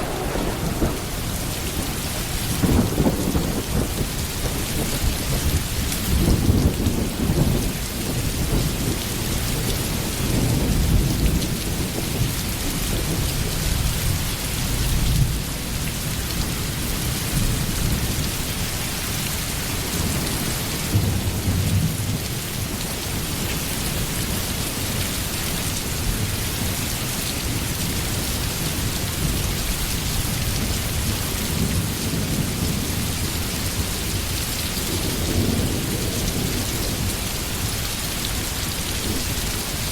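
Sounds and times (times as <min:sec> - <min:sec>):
rain hissing: 0:00.0 - 0:08.6
rolling thunder: 0:00.0 - 0:18.8, 0:28.4 - 0:39.9.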